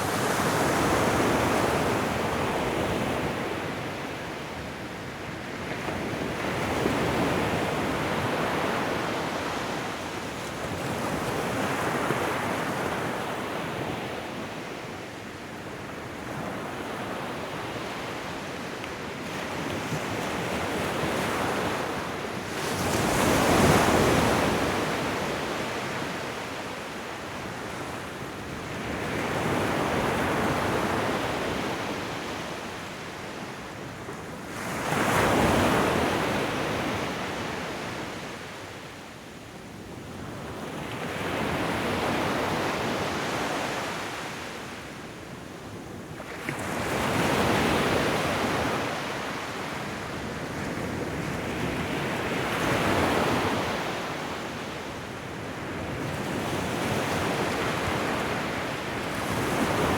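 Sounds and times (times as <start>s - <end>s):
ocean waves breaking on shore: 46.2s - 59.9s.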